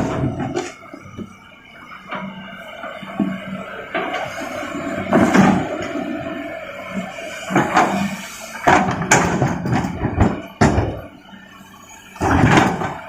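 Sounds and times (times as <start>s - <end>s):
rocks dropping into steel truck bed: 8.6s - 11.0s, 12.2s - 13.0s.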